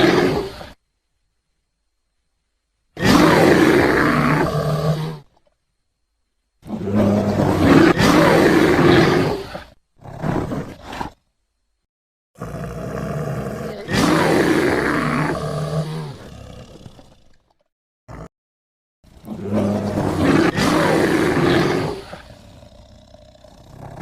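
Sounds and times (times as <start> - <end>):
bear growling roars: 0.0 - 0.8, 3.0 - 5.3, 6.6 - 11.2, 12.4 - 18.3, 19.0 - 24.0.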